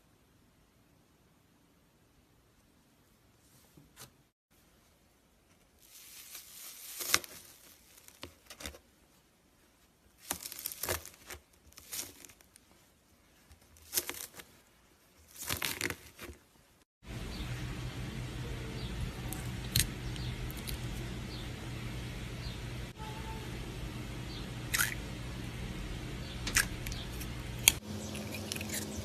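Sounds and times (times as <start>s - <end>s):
crinkling handling noises: 5.5s - 16.8s
steady hum: 17.0s - 29.0s.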